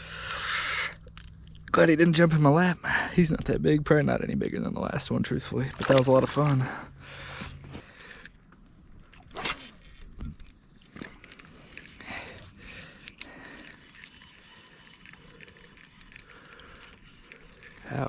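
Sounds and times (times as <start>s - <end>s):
fishing gear scraping and rattling: 5.5s - 8.4s.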